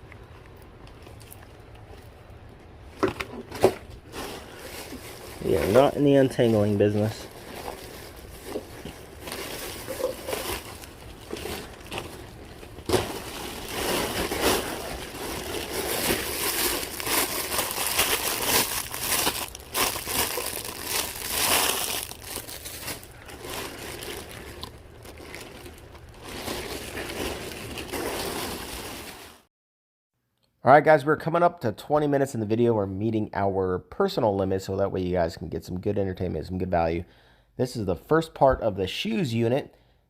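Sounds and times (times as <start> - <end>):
bags and packaging rustling: 0.8 - 29.5.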